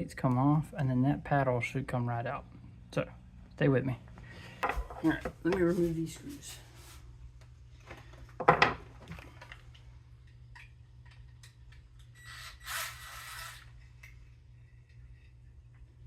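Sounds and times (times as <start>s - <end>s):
screw rasping as it turns out: 12.2s - 13.8s.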